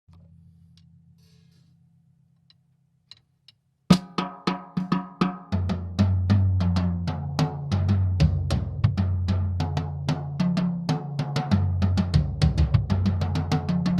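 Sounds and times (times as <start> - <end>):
drum kit playing: 3.9 - 13.9.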